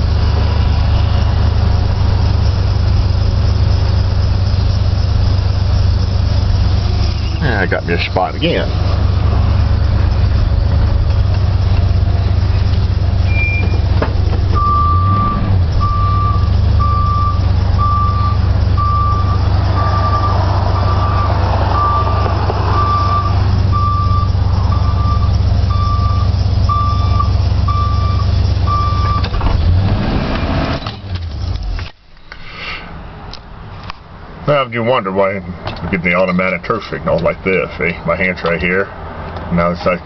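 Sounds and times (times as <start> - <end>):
van engine running: 0.0 - 34.7
repeating electronic beep: 13.2 - 13.9, 14.6 - 29.2.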